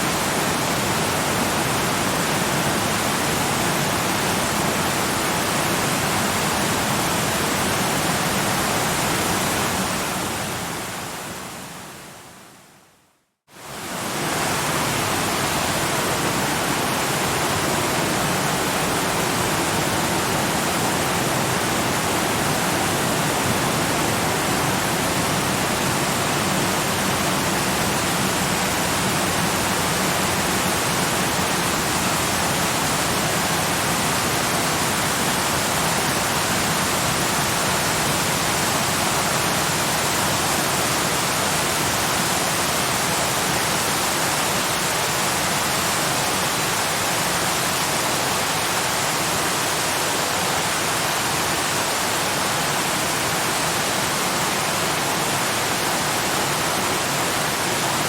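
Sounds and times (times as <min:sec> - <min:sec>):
waterfall rushing: 0:13.6 - 0:58.0.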